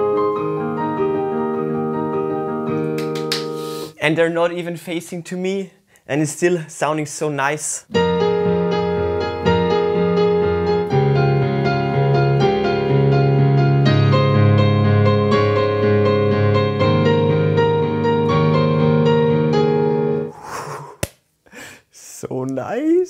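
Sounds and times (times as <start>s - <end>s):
piano chords: 0.0s - 3.9s, 7.9s - 20.3s.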